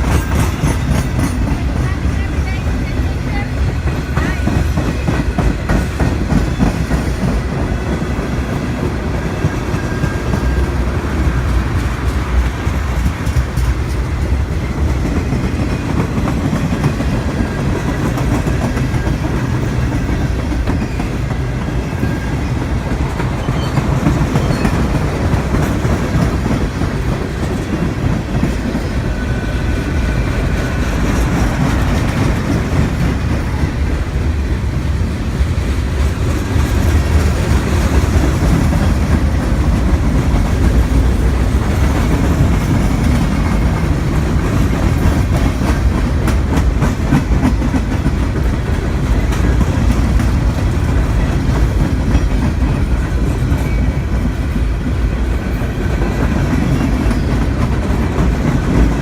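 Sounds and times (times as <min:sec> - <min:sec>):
train wheels clacking over rail joints: 0:00.0 - 0:34.4, 0:35.6 - 0:59.0
train low rumble: 0:00.0 - 0:59.0.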